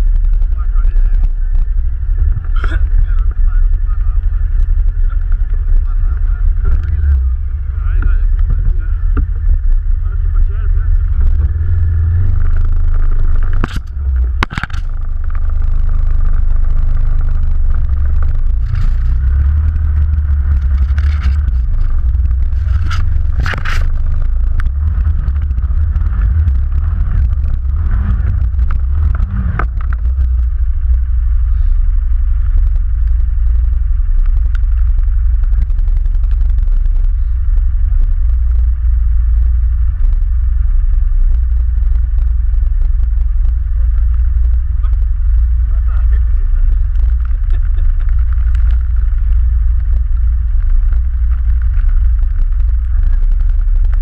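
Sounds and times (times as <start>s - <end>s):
atv engine running: 0.0s - 54.0s
sharp knocks and scrapes: 13.3s - 15.5s, 18.2s - 30.5s.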